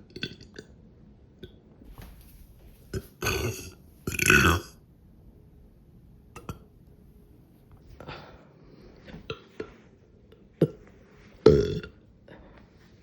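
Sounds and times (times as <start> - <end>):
throat clicks and small burps: 0.0 - 0.8, 6.4 - 6.7, 10.6 - 10.8, 11.4 - 12.0
loud burp: 3.2 - 4.8, 11.5 - 12.0.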